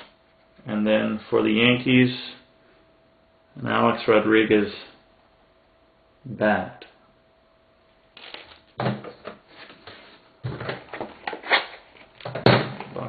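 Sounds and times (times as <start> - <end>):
cardboard rustling and scraping: 8.2 - 12.2.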